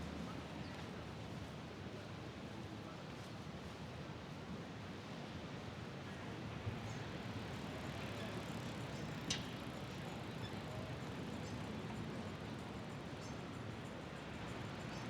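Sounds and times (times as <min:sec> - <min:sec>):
outdoor background noise: 0:00.0 - 0:15.0.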